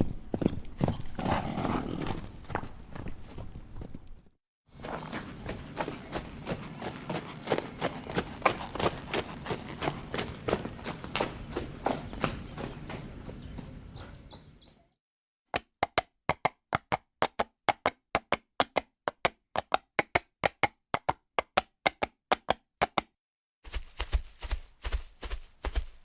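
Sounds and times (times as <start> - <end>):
horse hooves clip-clopping: 0.0 - 14.8, 23.7 - 26.0
heavy hoofbeats with thuds: 0.0 - 14.9, 23.7 - 26.0.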